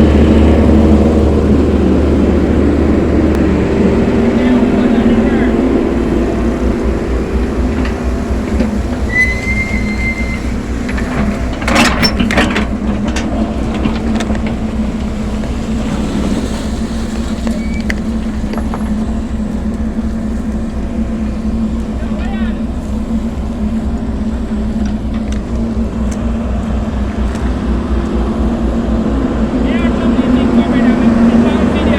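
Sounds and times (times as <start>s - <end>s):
backhoe engine running: 0.0s - 31.9s
metal clanks: 6.7s - 15.6s
high metallic squeal: 8.6s - 12.4s.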